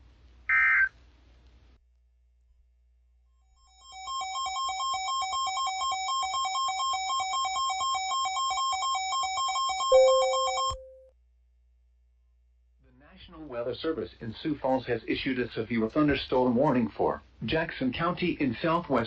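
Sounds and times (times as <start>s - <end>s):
low steady beep: 5.6s - 11.1s
electronic warbling alert tone: 9.9s - 11.0s.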